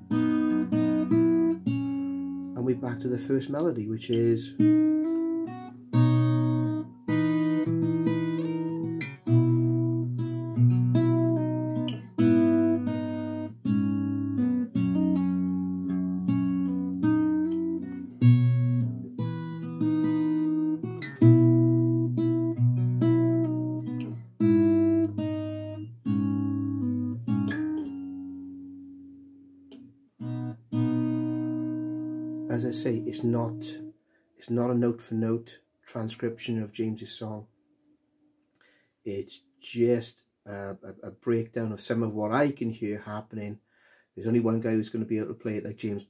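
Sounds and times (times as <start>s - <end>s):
fingerstyle acoustic guitar: 0.0s - 33.9s.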